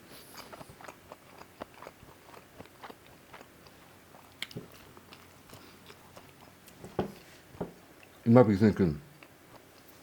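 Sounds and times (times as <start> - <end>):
wet mouth chewing clicks: 0.4 - 3.5.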